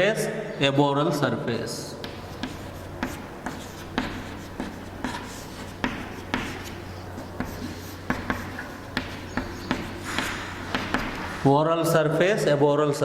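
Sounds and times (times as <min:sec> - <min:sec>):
writing taps and scrapes on board: 0:02.0 - 0:11.4.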